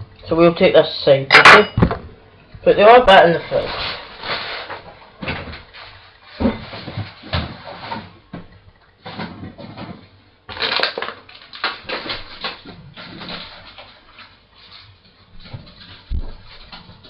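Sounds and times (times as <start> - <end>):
food wrapping crinkling: 3.4 - 8.2, 10.5 - 17.0.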